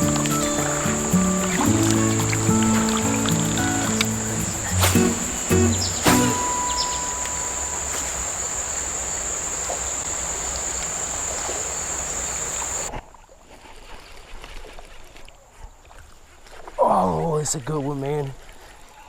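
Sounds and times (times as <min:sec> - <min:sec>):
background music: 0:00.0 - 0:07.9
creek hiss: 0:00.0 - 0:12.9
high-pitched insect drone: 0:00.0 - 0:12.9.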